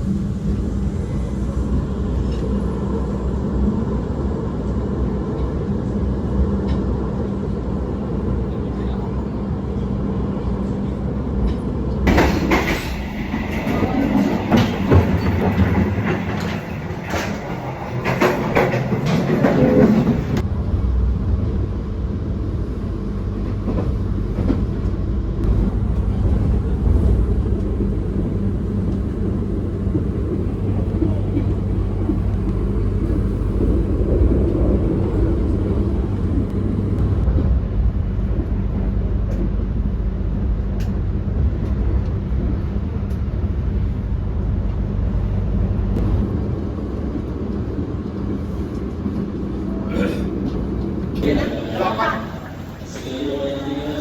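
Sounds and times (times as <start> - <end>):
train rumbling: 0.0 - 54.0
rail clatter: 11.3 - 20.5, 45.6 - 54.0.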